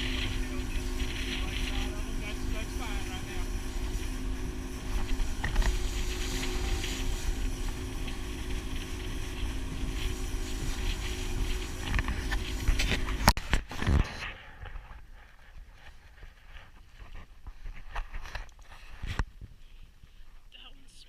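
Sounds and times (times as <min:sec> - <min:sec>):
boat motor rumbling: 0:00.0 - 0:15.6
wind noise on microphone: 0:00.0 - 0:19.6.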